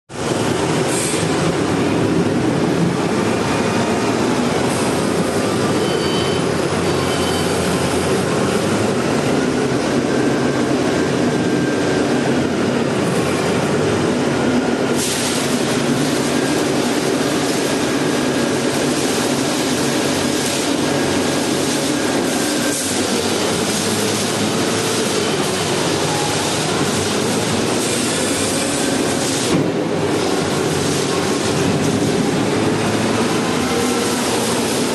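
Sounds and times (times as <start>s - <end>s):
concrete mixer running: 7.6s - 34.9s.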